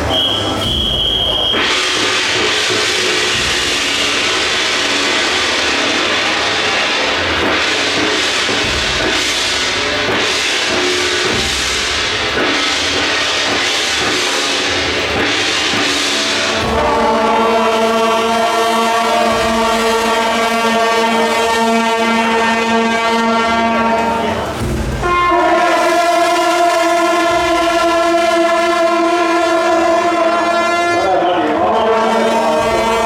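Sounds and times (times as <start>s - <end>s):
cymbals and gongs crashing: 0.0s - 33.0s
dense din: 0.0s - 33.0s
sustained horn tone: 15.4s - 33.0s.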